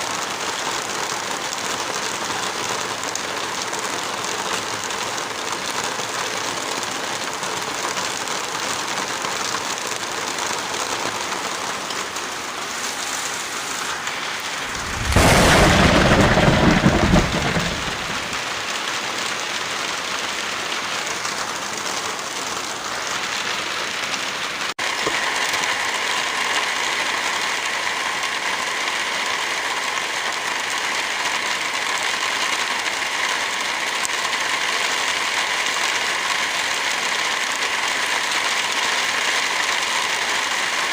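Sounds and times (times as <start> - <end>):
heavy rain falling: 0.0 - 40.9
loud thunderclap: 14.5 - 18.6.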